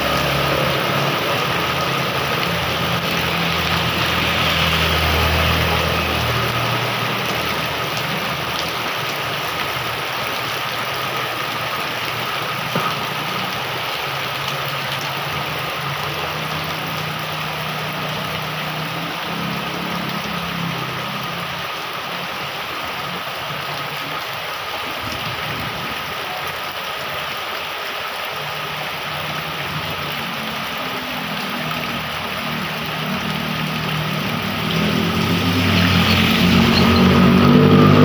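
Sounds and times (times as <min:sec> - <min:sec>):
vehicle engine humming: 0:00.0 - 0:10.2, 0:30.3 - 0:38.0
heavy rain falling: 0:00.0 - 0:38.0.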